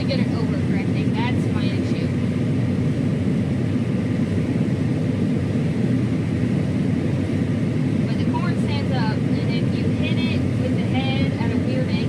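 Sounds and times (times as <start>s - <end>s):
combine harvester engine drone: 0.0s - 12.0s.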